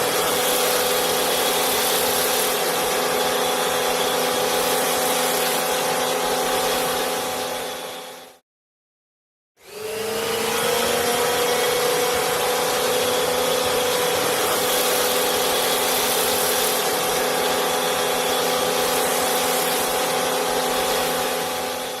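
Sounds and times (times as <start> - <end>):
hiss of water spray: 0.0 - 3.0, 12.5 - 21.8
pressure washer running: 0.0 - 8.4, 9.6 - 22.0.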